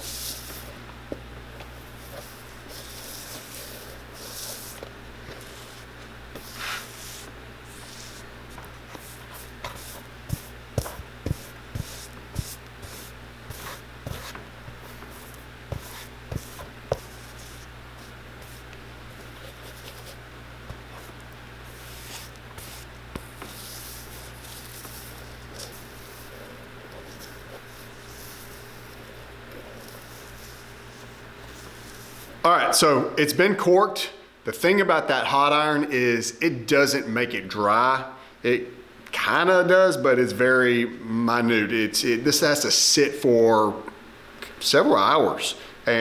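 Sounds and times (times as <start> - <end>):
steady low hum: 0.0 - 46.0
soft scraping and rubbing: 1.9 - 8.3, 8.9 - 32.4.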